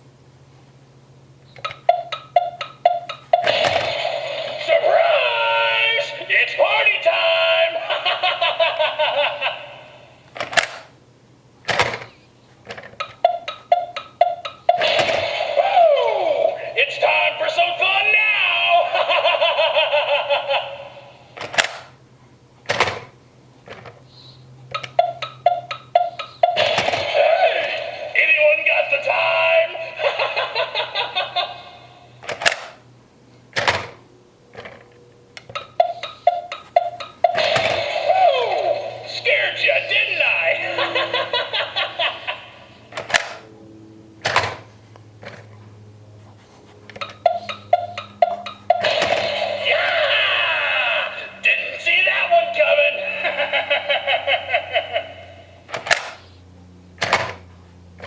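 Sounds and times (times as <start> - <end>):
low steady hum: 0.0 - 58.0
recorded monster laugh: 7.5 - 10.1, 14.8 - 21.2, 26.4 - 31.9, 37.2 - 42.7, 48.8 - 55.4.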